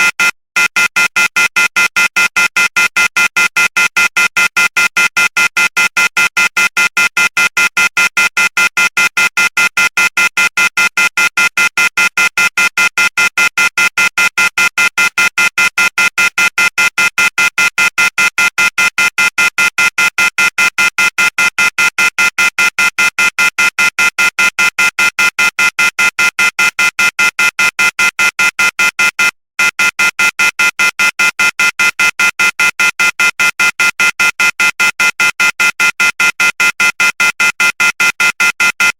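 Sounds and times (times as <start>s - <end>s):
high-pitched electronic phone beeping: 0.0s - 1.1s.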